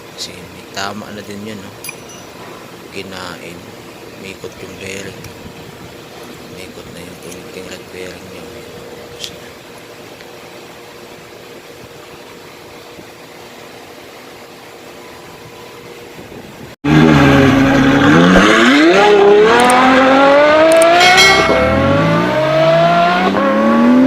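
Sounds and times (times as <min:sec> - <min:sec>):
car engine accelerating hard: 0:16.8 - 0:24.0.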